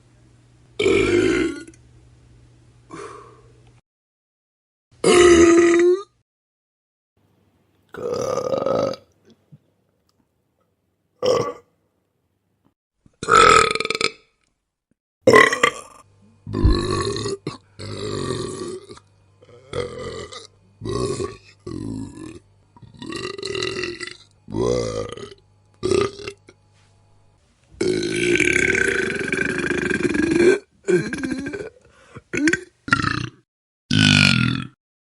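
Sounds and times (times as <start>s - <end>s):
person burping: 0.8s - 1.8s, 5.0s - 6.2s, 7.9s - 9.1s, 11.2s - 11.7s, 13.2s - 14.3s, 15.3s - 26.6s, 27.8s - 34.8s.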